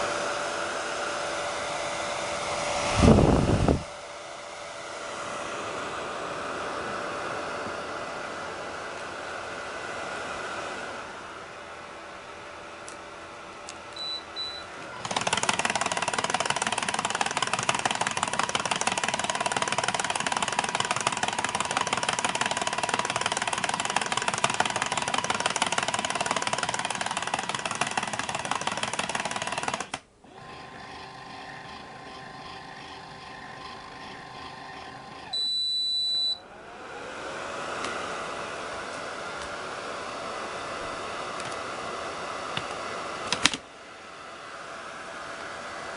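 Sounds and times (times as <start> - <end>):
vacuum cleaner running: 0.0 - 45.9.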